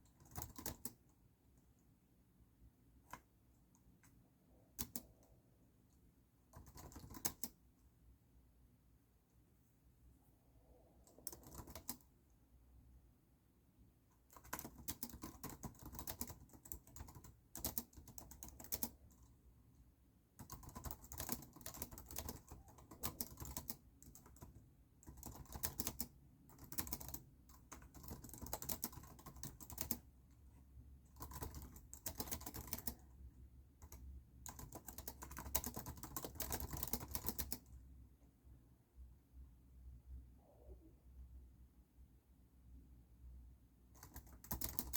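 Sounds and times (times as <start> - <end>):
keyboard typing clicks: 0.1 - 1.0, 4.8 - 5.1, 6.5 - 7.6, 11.1 - 12.1, 14.3 - 19.0, 20.4 - 30.0, 31.1 - 33.0, 33.8 - 37.7, 44.0 - 44.9.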